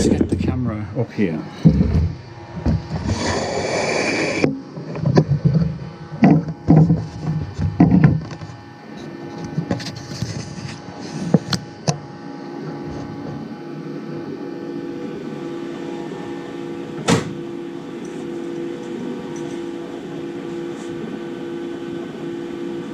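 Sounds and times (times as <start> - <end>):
stepper motors whining: 1.2 - 10.1
knocks: 17.0 - 17.4.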